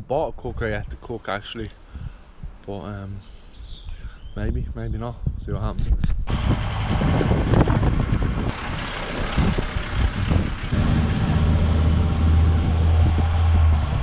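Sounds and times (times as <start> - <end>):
car engine: 6.3 - 14.0
road noise: 6.3 - 14.0.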